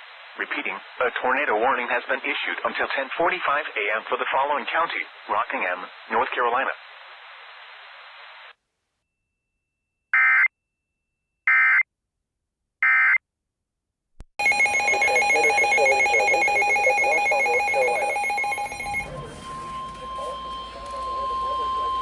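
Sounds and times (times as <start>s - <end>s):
high electronic whine tones: 14.4s - 22.0s
screeching digital data tones: 14.4s - 22.0s.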